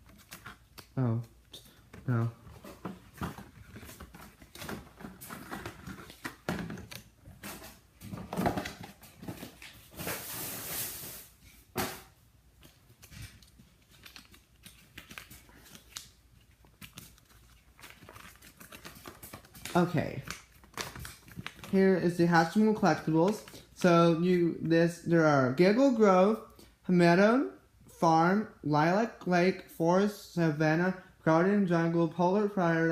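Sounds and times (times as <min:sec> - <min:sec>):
packaging rustling and clicking: 0:00.0 - 0:11.2, 0:12.5 - 0:21.8.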